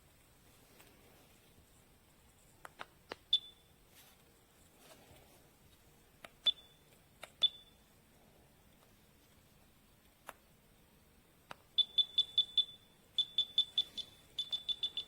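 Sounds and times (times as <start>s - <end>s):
short high-pitched beeps: 3.3s - 3.7s, 11.8s - 15.0s.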